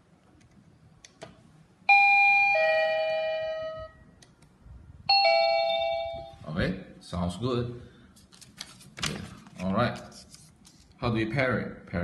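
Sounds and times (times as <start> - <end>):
doorbell ding-dong chime: 1.9 - 4.0, 5.1 - 6.4.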